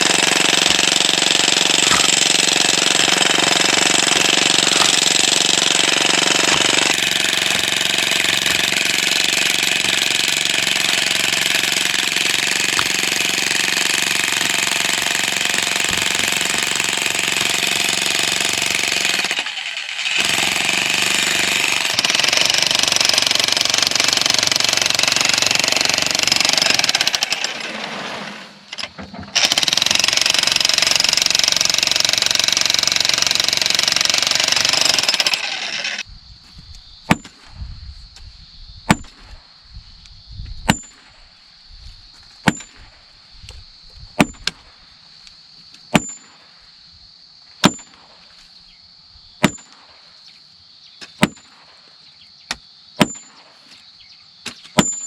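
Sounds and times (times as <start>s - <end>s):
jackhammer breaking stone: 0.0s - 28.4s, 29.3s - 36.0s
metal tool striking stone: 1.8s - 2.2s, 37.1s - 37.3s, 38.9s - 39.2s, 40.7s - 41.0s, 42.4s - 42.8s, 44.2s - 44.5s, 45.9s - 46.3s, 47.6s - 47.9s, 49.4s - 49.8s, 51.1s - 51.4s, 53.0s - 53.4s, 54.5s - 55.0s.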